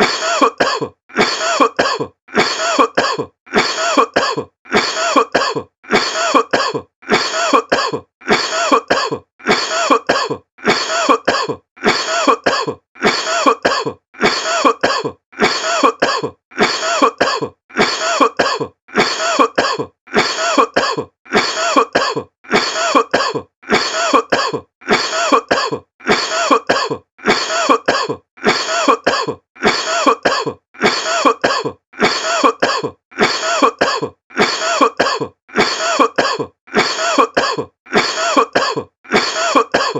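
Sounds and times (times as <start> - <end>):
person coughing: 0.0 - 39.9.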